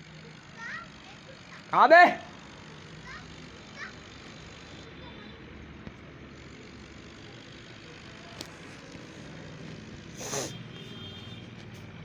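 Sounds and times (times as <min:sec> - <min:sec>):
short hiss-like burst: 0:10.2 - 0:10.6.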